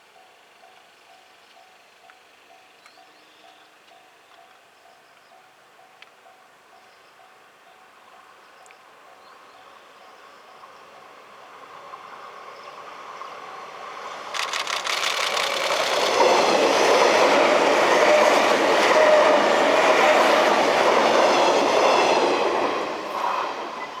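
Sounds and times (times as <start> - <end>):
electric train passing: 0.0 - 24.0
wheels clacking over rail joints: 13.8 - 23.2.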